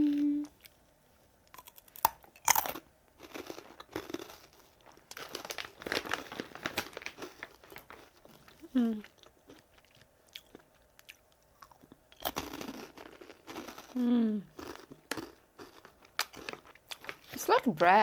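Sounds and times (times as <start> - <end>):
person humming: 0.0 - 0.5, 8.6 - 9.1, 14.0 - 14.5
crunchy snack chewing: 1.5 - 17.3.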